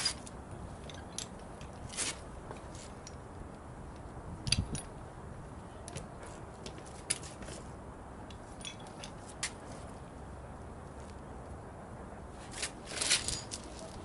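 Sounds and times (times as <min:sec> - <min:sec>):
metal chain clinking: 0:12.6 - 0:14.0.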